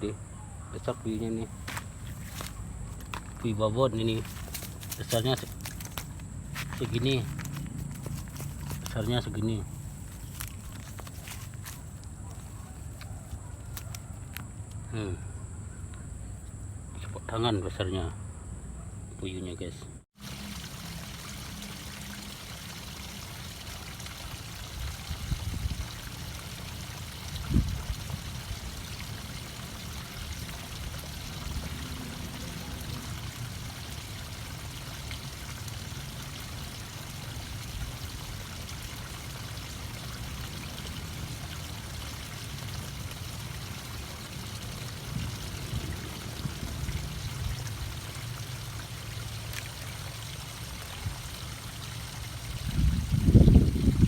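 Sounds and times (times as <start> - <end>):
river water flowing: 20.2 - 25.2, 25.8 - 52.6.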